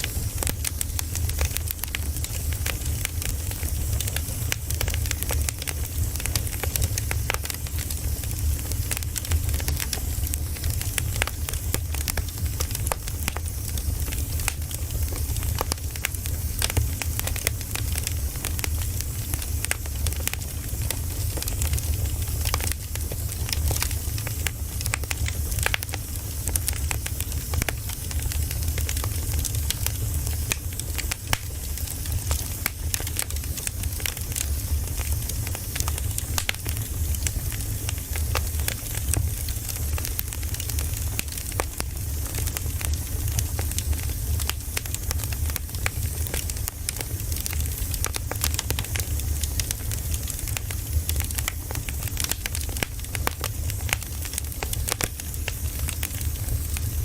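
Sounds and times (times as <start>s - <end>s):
campfire crackling and popping: 0.0s - 57.0s
fire hiss and low rumble: 0.0s - 57.0s.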